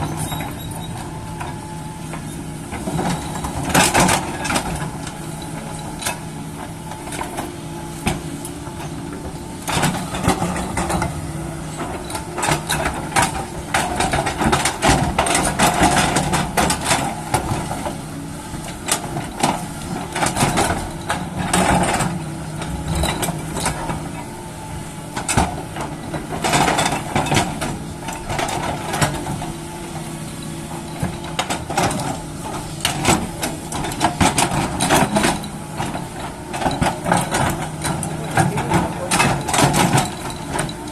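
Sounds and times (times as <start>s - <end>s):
clanks and knocks: 0.0s - 18.0s, 25.1s - 40.9s
excavator diesel engine running: 0.0s - 40.9s.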